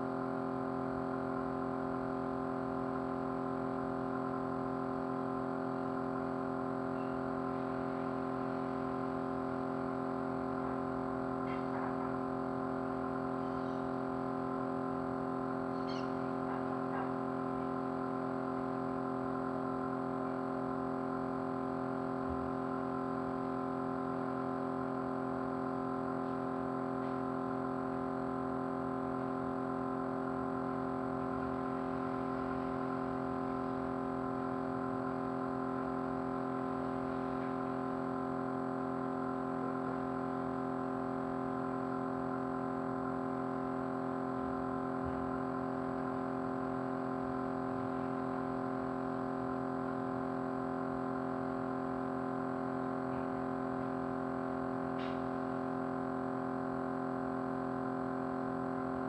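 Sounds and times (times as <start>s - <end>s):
small motor humming: 5.8s - 18.7s.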